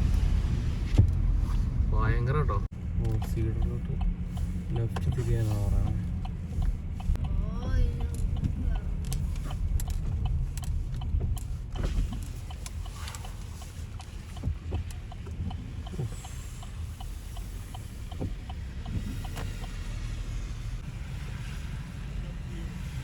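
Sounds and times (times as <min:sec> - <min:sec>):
road and engine rumble: 0:00.0 - 0:23.0
light regular ticking: 0:02.8 - 0:20.7.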